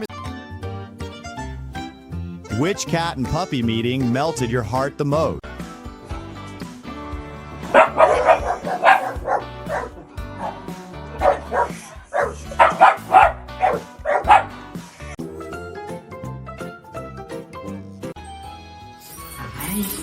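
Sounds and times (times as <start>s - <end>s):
background music: 0.0s - 20.0s
dog barking: 7.7s - 10.6s, 11.2s - 14.6s.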